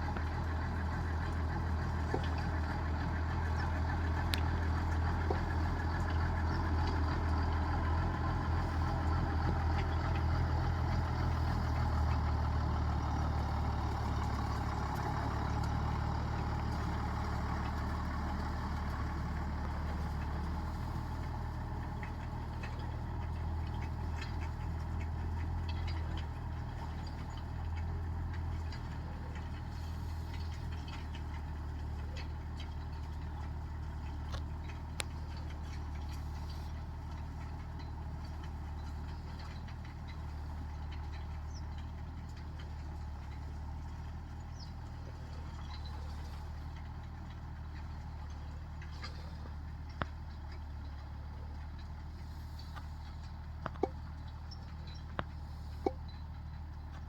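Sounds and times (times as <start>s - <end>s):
tractor engine droning: 0.0s - 57.0s.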